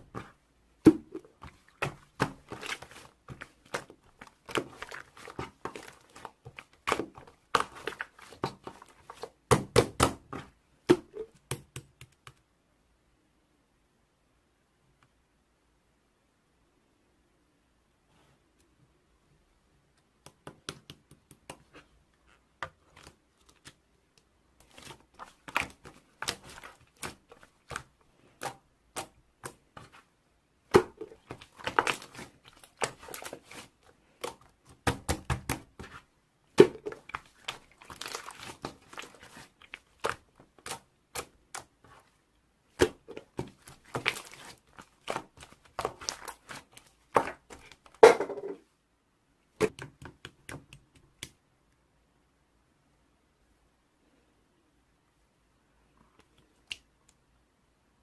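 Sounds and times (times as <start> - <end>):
slime crackling and popping: 30.7 - 41.8, 42.7 - 48.0.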